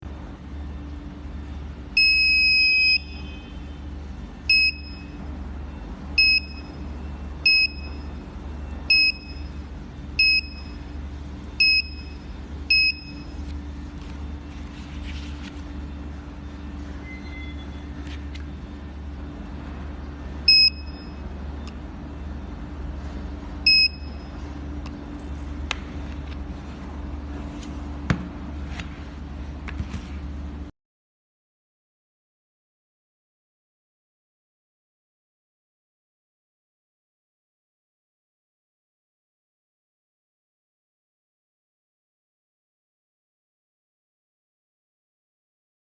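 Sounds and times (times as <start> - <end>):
steady low hum: 0.1 - 30.7.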